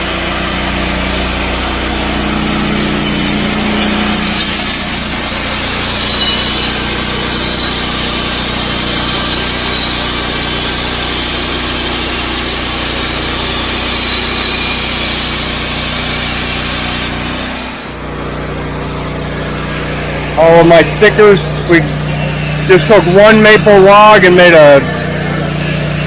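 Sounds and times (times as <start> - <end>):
saw blade cutting log: 0.0 - 18.1
engine hum: 0.0 - 26.0.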